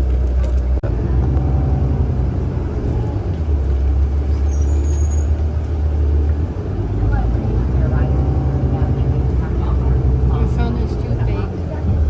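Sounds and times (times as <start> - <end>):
subway train rumbling: 0.0 - 12.0
faint high squeal: 4.2 - 5.4.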